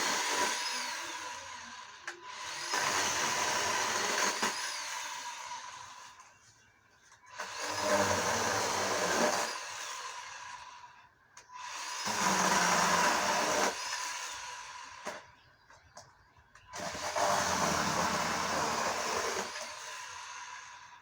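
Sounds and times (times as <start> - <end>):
electric chainsaw cutting branches: 0.0 - 6.4, 7.2 - 15.4, 16.6 - 21.0.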